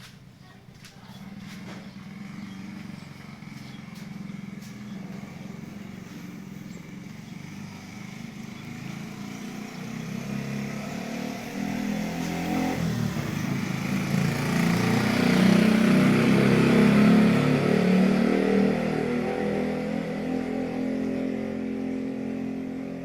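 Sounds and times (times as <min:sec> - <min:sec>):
minibike engine running and revving: 0:01.2 - 0:23.0.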